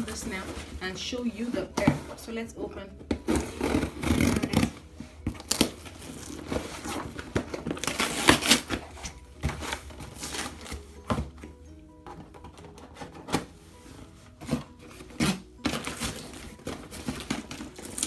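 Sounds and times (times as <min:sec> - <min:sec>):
plastic packaging tearing and crinkling: 0:03.3 - 0:10.8, 0:15.0 - 0:18.0.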